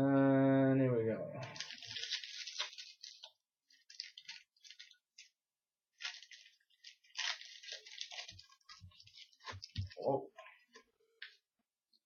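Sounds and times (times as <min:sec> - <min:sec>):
foil wrapper crinkling and rustling: 0:01.4 - 0:10.0.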